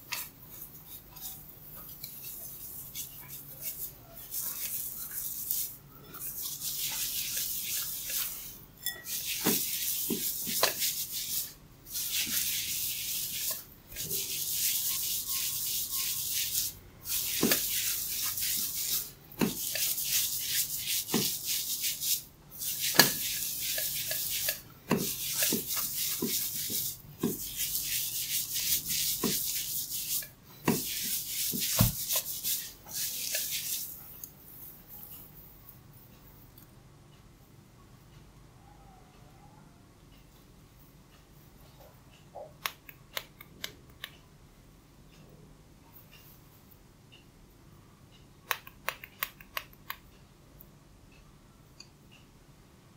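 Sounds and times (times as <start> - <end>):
hands rubbing through hair: 0.1 - 34.0.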